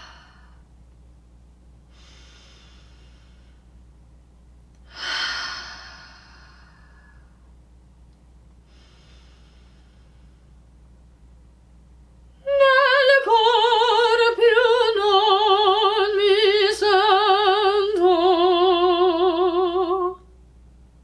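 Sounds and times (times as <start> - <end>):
singer breathing: 0.0 - 0.6, 1.9 - 3.7, 4.9 - 7.4, 8.6 - 10.6.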